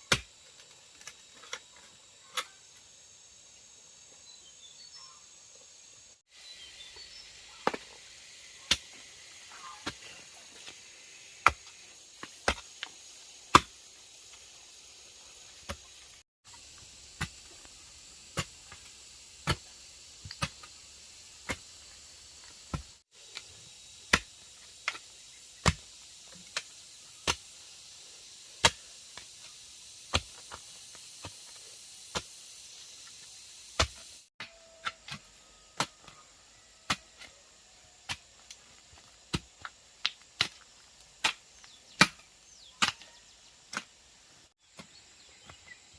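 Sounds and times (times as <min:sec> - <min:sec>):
sharp chopping strikes: 0:00.1 - 0:00.3, 0:13.5 - 0:13.8, 0:17.2 - 0:17.6, 0:18.3 - 0:20.7, 0:24.0 - 0:25.0, 0:28.6 - 0:29.3, 0:30.1 - 0:30.6, 0:33.8 - 0:36.2, 0:42.0 - 0:43.0
faint high hiss: 0:02.3 - 0:34.3.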